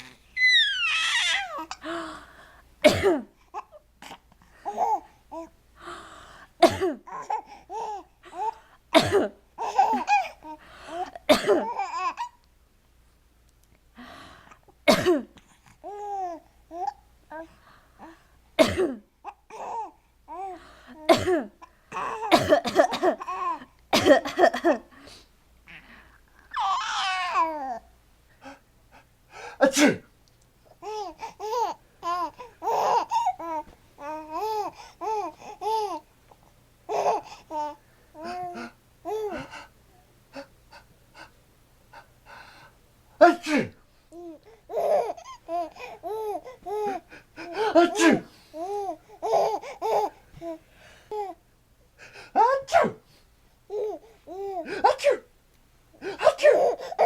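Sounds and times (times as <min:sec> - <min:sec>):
baby laughing and babbling: 0:00.0 - 0:01.8, 0:03.5 - 0:05.5, 0:07.1 - 0:08.6, 0:09.6 - 0:12.4, 0:15.8 - 0:17.5, 0:19.2 - 0:23.8, 0:26.5 - 0:27.9, 0:30.8 - 0:36.1, 0:36.9 - 0:39.6, 0:43.3 - 0:51.4, 0:53.7 - 0:55.0, 0:56.0 - 0:57.0
baby squealing: 0:00.1 - 0:01.7, 0:26.5 - 0:27.6
sharp coughs: 0:02.8 - 0:03.3, 0:06.6 - 0:07.0, 0:09.0 - 0:10.2, 0:11.3 - 0:11.8, 0:14.9 - 0:15.4, 0:18.6 - 0:19.1, 0:21.1 - 0:21.5, 0:22.3 - 0:23.2, 0:23.9 - 0:24.8.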